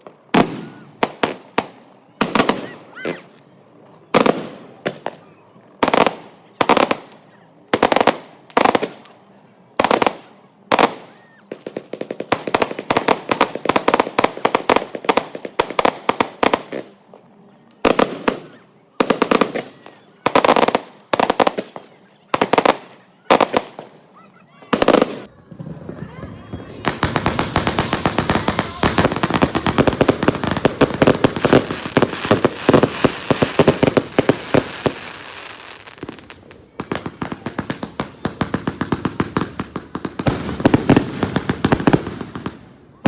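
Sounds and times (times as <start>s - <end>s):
fireworks bangs: 0.0s - 43.0s
rapid crackling pops: 9.8s - 25.3s.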